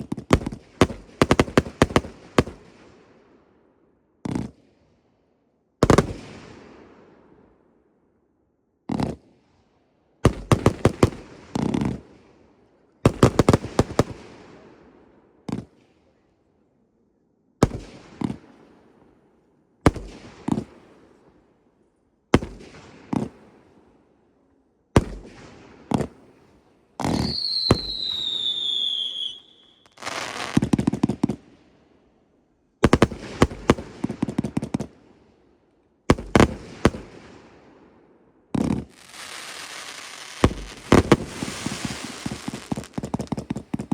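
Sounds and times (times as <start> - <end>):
firework bangs and cracks: 0.1 - 2.8, 5.8 - 6.6, 17.6 - 18.5, 19.8 - 20.9, 22.4 - 23.6, 25.0 - 26.4, 27.0 - 31.6, 32.8 - 35.0, 36.1 - 37.5, 38.5 - 43.9
dense firework crackling: 27.0 - 31.4, 38.6 - 43.9
descending firework whistle: 27.1 - 30.6.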